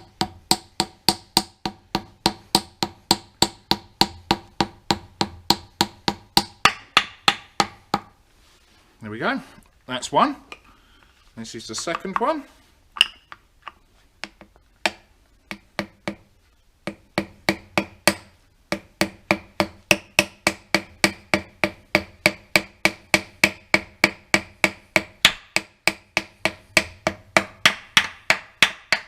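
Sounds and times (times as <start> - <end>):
hammer tapping metal: 13.0 - 13.4, 14.2 - 29.0.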